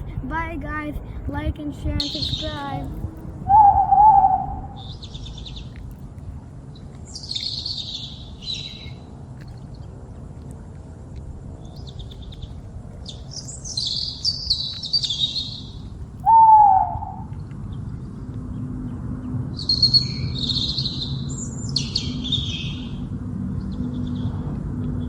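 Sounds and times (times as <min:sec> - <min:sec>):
birds chirping: 0:00.0 - 0:05.8, 0:06.7 - 0:09.9, 0:11.6 - 0:25.0
low background rumble: 0:00.0 - 0:25.0
loud whistled bird note: 0:16.3 - 0:17.2.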